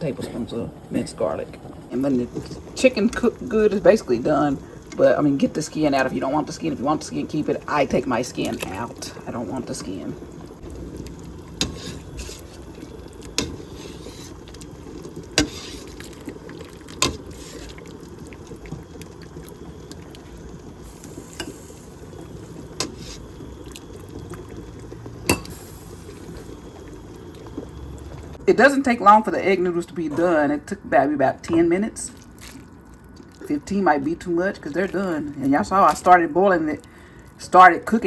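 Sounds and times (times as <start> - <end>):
pots bubbling: 0.0 - 38.0
metal utensil scraping a pot: 11.5 - 14.7, 15.3 - 16.3, 16.9 - 17.8, 22.8 - 23.3.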